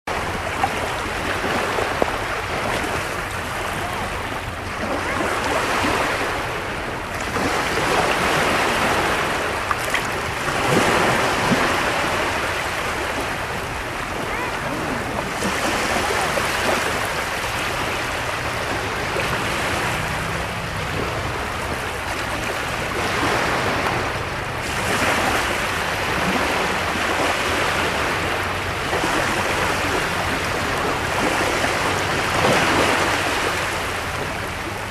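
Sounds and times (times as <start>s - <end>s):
small waves breaking on shore: 0.1s - 34.9s
faint voices: 14.1s - 17.2s.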